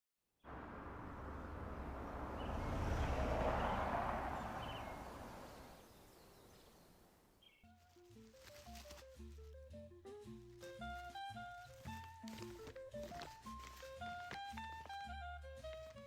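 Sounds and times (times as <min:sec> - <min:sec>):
low hum: 0:00.5 - 0:07.3
faint bird chirps: 0:03.6 - 0:07.8
music: 0:07.4 - 0:16.0.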